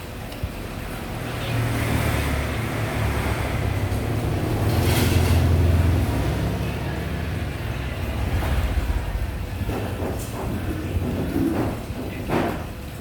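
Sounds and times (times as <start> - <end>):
vehicle engine rumbling past: 0.8 - 9.8.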